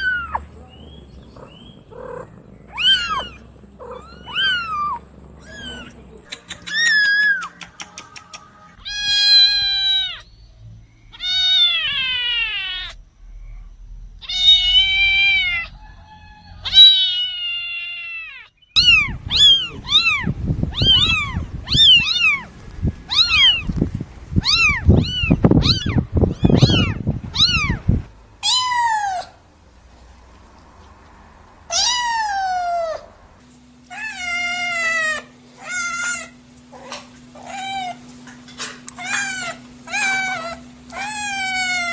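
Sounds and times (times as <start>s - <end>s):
low rumbling noise: 0.0s - 6.3s, 8.6s - 17.8s, 18.5s - 34.5s
kittens meowing: 0.0s - 7.6s, 8.8s - 10.3s, 11.1s - 13.0s, 14.2s - 15.8s, 16.6s - 23.8s, 24.4s - 29.4s, 31.7s - 33.1s, 33.8s - 38.1s, 38.9s - 41.9s.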